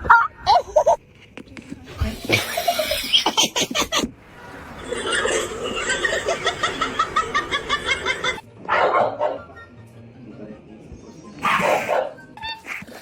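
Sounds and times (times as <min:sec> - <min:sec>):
person laughing: 0:02.3 - 0:04.1, 0:04.8 - 0:08.4.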